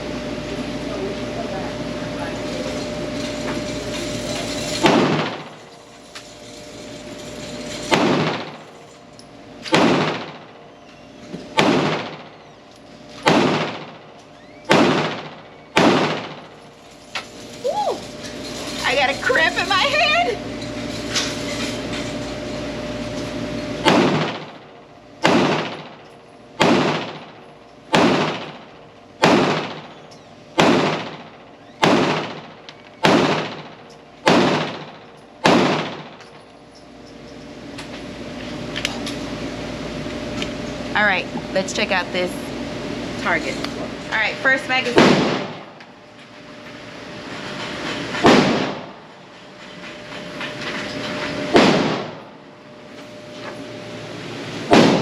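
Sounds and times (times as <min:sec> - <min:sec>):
steady background noise: 0:00.0 - 0:55.0
pistol shots: 0:04.8 - 0:05.4, 0:07.9 - 0:08.6, 0:09.6 - 0:10.6, 0:11.6 - 0:12.4, 0:13.2 - 0:14.0, 0:14.7 - 0:16.5, 0:23.8 - 0:24.5, 0:25.2 - 0:26.0, 0:26.6 - 0:30.0, 0:30.6 - 0:36.2, 0:44.9 - 0:45.7, 0:48.2 - 0:49.0, 0:51.5 - 0:52.2, 0:54.7 - 0:55.0
gunshots with echo: 0:09.7 - 0:10.4, 0:13.3 - 0:14.0, 0:14.7 - 0:16.5, 0:23.8 - 0:24.5, 0:25.2 - 0:25.9, 0:26.6 - 0:28.6, 0:29.2 - 0:29.8, 0:30.6 - 0:36.1, 0:54.7 - 0:55.0.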